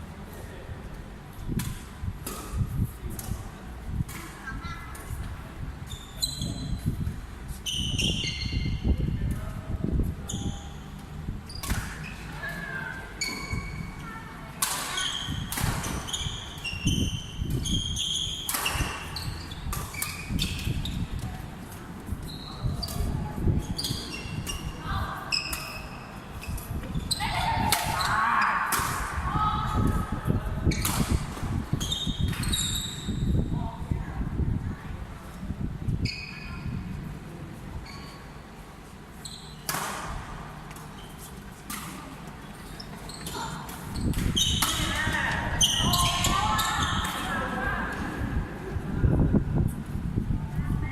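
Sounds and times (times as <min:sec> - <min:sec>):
sneakers squeaking on floor: 0:05.9 - 0:09.0, 0:10.1 - 0:14.0, 0:14.7 - 0:21.4, 0:22.1 - 0:28.6, 0:30.6 - 0:33.4, 0:36.0 - 0:36.9, 0:37.8 - 0:38.4, 0:39.1 - 0:42.0, 0:42.6 - 0:47.5.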